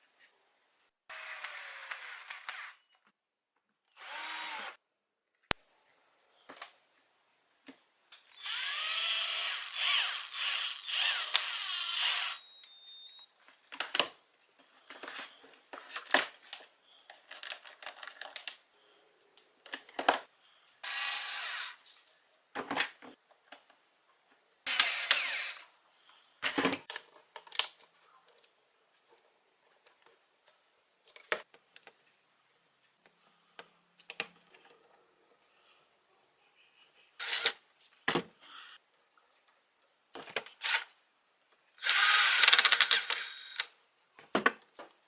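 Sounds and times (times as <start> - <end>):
power driver whirring: 4.0 - 4.8, 8.4 - 13.2, 20.8 - 21.8, 24.7 - 25.6, 37.2 - 37.6, 41.8 - 43.6.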